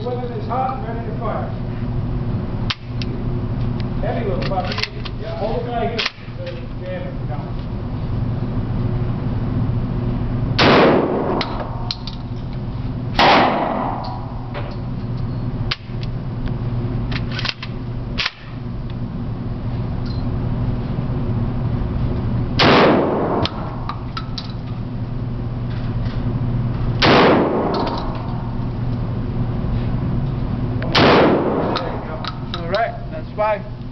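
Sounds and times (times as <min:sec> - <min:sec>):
steady low hum: 0:00.0 - 0:33.9
shotgun shots echoing: 0:10.6 - 0:11.9, 0:13.2 - 0:14.3, 0:22.6 - 0:23.8, 0:27.0 - 0:28.1, 0:30.9 - 0:32.0.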